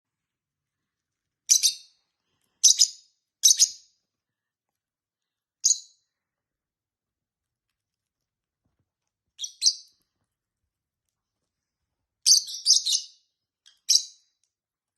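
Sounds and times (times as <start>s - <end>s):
lovebird chirping: 1.5s - 2.0s, 2.6s - 3.9s, 5.6s - 6.0s, 9.4s - 10.0s, 12.2s - 14.3s.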